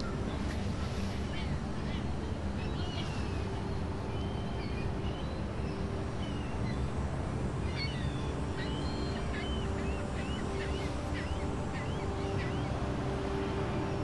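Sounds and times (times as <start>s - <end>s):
birds chirping: 7.6s - 14.0s.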